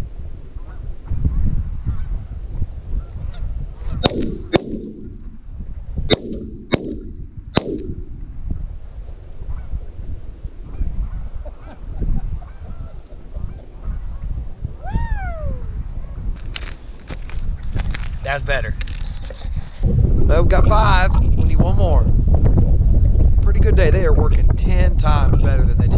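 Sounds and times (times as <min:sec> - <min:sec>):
shotgun shots: 0:04.0 - 0:05.4, 0:06.1 - 0:08.1
geese honking: 0:10.7 - 0:14.2.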